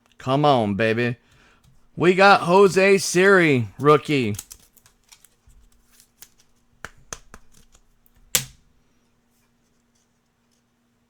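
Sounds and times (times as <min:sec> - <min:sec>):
trading cards clicking: 0:01.6 - 0:08.7.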